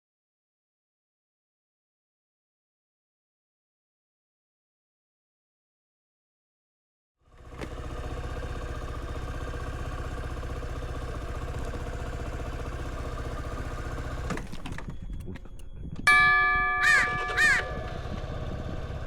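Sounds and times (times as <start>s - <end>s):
motorcycle engine running: 7.2s - 14.6s, 16.2s - 19.0s.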